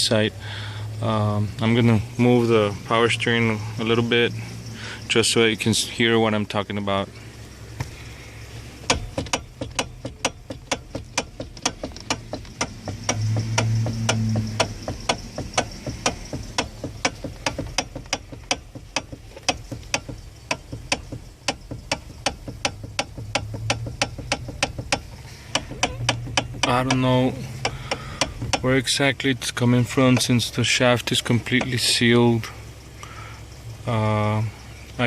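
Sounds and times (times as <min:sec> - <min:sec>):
steering column clicking: 0:08.8 - 0:32.3.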